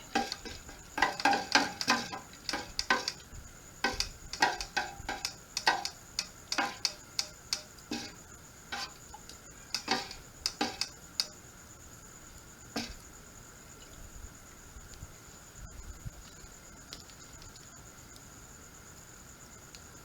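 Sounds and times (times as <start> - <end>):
knife chopping firewood: 0.2 - 3.2, 3.9 - 8.2, 12.8 - 13.0.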